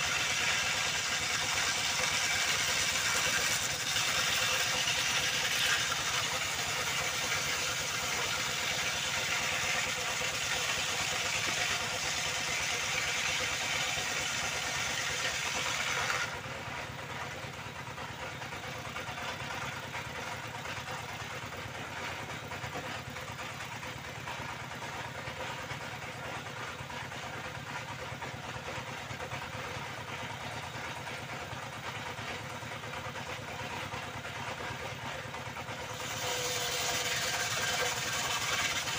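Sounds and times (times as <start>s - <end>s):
circular saw cutting timber: 0.0s - 17.3s, 35.1s - 38.9s.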